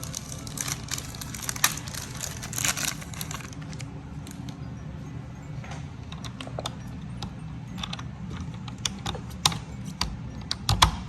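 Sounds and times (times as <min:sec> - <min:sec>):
plastic parts clicking and rattling: 0:00.0 - 0:04.6
steady low hum: 0:00.0 - 0:11.0.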